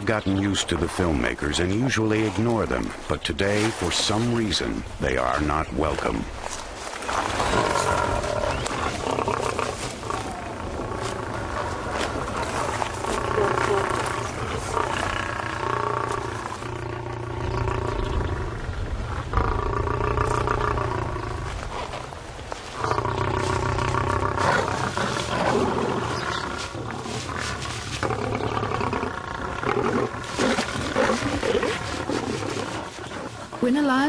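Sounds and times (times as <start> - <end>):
lions growling and snarling: 7.0 - 34.0.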